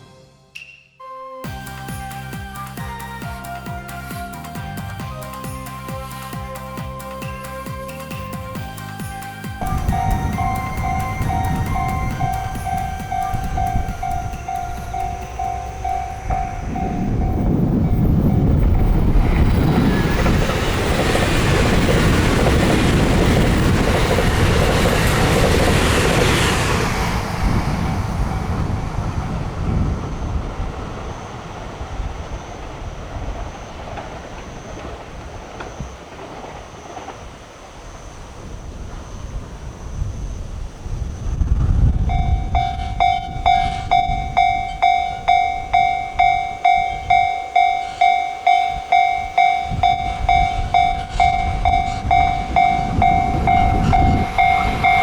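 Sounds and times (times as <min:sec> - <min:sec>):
train wheel and rail rumble: 0:01.5 - 0:55.0
level crossing warning bell: 0:09.6 - 0:26.5, 0:42.0 - 0:55.0.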